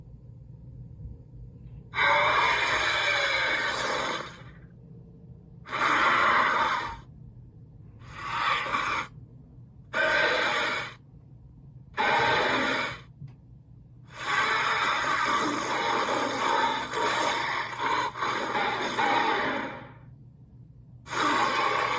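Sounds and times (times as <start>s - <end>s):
heavy hissing breaths: 8.0s - 9.2s, 9.9s - 11.0s, 14.1s - 20.0s, 21.1s - 21.9s.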